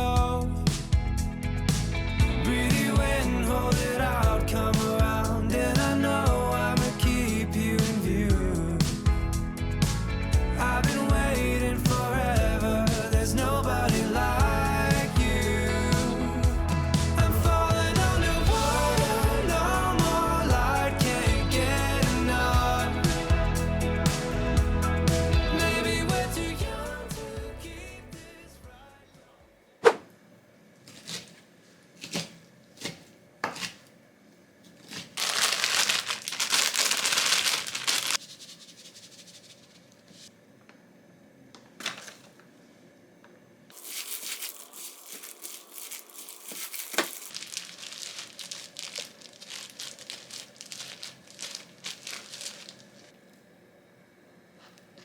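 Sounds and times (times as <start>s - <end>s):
plastic packaging crinkling: 34.7s - 40.3s, 43.7s - 53.1s.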